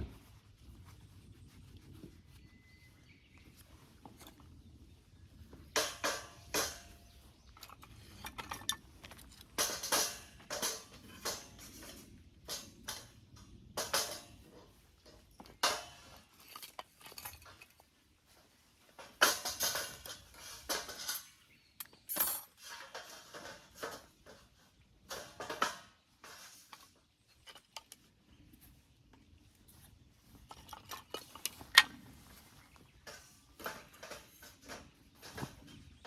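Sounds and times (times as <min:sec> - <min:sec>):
metal cookware clinking: 0:33.0 - 0:36.0.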